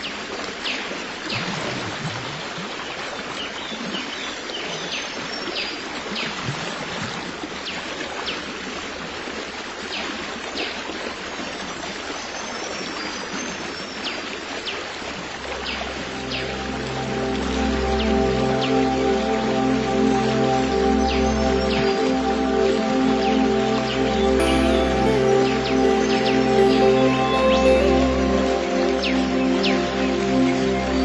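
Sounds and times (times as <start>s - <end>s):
stream water rushing: 0.0s - 31.0s
soft music tones: 15.3s - 31.0s
high chirps: 24.2s - 31.0s.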